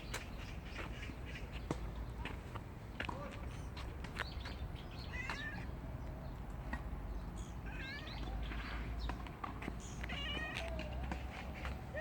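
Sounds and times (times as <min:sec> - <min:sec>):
cat meowing: 0:05.1 - 0:05.7, 0:07.6 - 0:08.4, 0:10.1 - 0:10.9.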